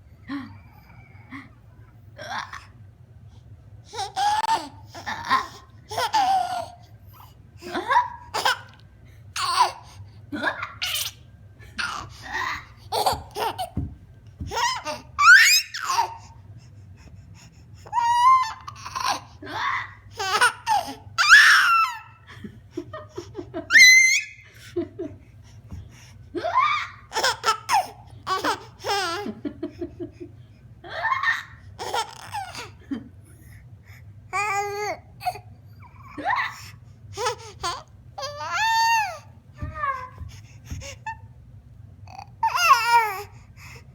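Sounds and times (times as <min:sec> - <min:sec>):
young child laughing and squealing: 0:21.2 - 0:22.1, 0:23.7 - 0:24.4.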